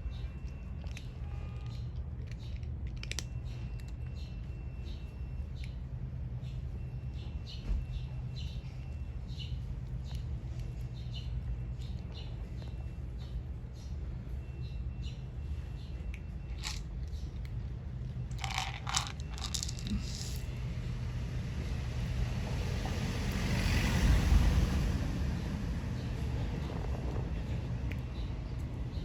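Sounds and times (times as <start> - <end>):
cats crunching and chewing food: 0.1 - 4.5, 16.0 - 20.5.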